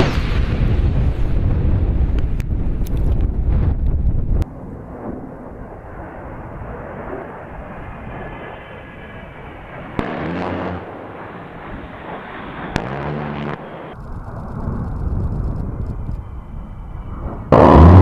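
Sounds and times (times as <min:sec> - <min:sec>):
rotary cannon firing bursts: 0:10.0 - 0:11.4
steady rushing noise: 0:10.6 - 0:18.0.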